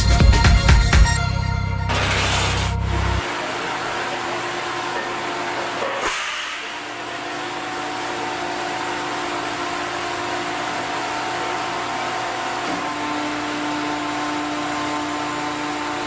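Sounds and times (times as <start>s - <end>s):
factory machinery whirring: 1.9s - 16.0s.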